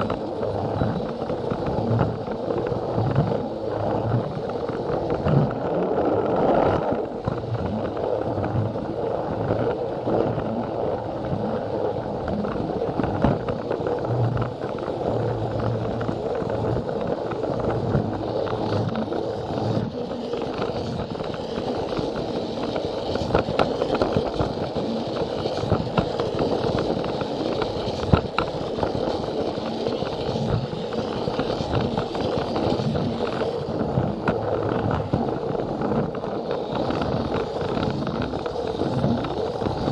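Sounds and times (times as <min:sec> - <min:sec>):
toy train motor rattling: 0:13.5 - 0:39.9.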